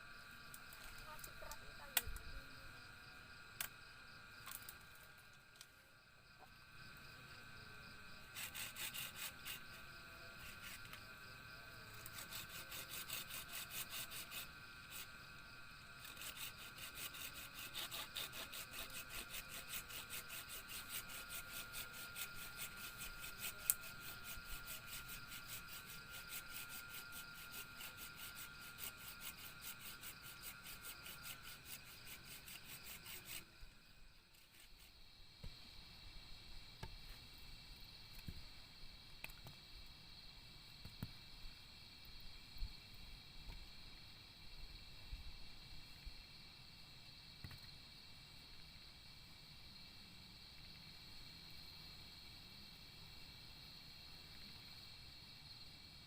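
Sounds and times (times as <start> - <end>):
high insect drone: 0.0 - 56.0
hand saw cutting wood: 8.3 - 9.8, 12.0 - 15.1, 16.0 - 33.5.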